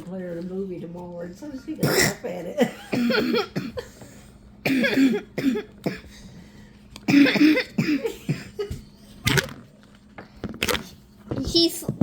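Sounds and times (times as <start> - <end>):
girl coughing: 1.8 - 3.9, 4.6 - 6.1, 7.1 - 8.8.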